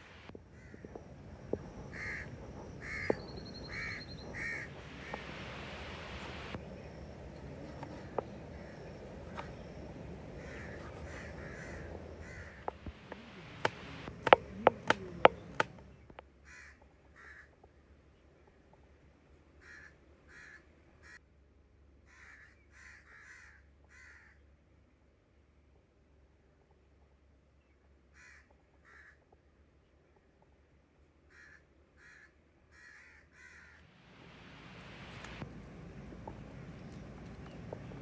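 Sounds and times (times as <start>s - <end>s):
crows cawing: 0.4s - 15.8s, 16.4s - 17.6s, 19.6s - 21.2s, 22.1s - 24.4s, 28.2s - 29.2s, 31.3s - 33.8s
sharp knocks: 12.6s - 15.8s.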